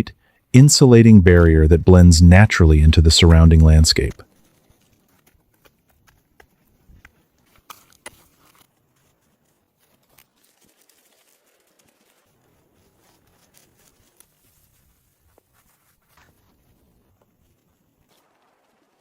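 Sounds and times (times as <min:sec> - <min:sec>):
hands working clay plaster: 0:00.8 - 0:17.2.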